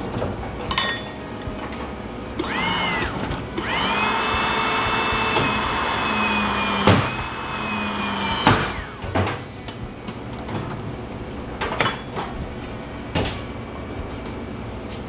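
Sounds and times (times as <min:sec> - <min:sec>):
power tool motor whining: 0:02.4 - 0:09.2.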